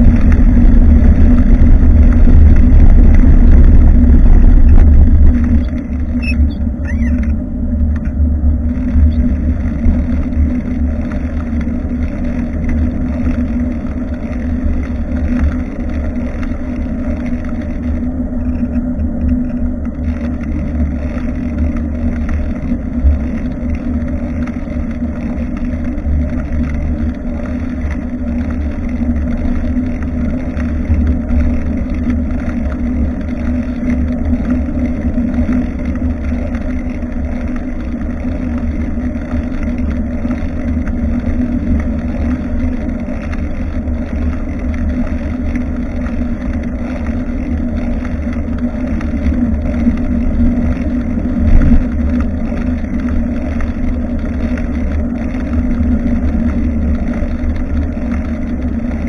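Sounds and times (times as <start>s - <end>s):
wind buffeting microphone: 0.0s - 14.1s
bicycle riding noise: 0.0s - 59.0s.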